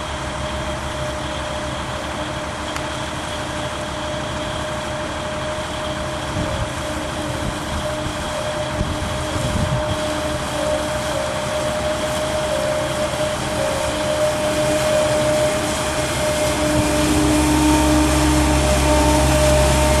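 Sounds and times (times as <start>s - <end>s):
boat engine running: 0.0s - 20.0s
high whine: 0.0s - 20.0s.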